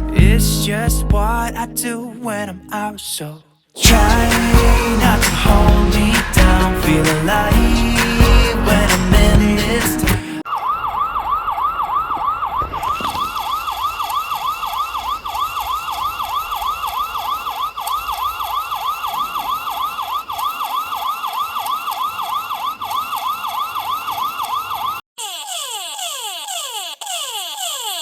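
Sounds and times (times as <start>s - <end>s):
alarm with falling tones: 10.4s - 25.0s
warbling electronic siren alarm: 10.4s - 25.0s.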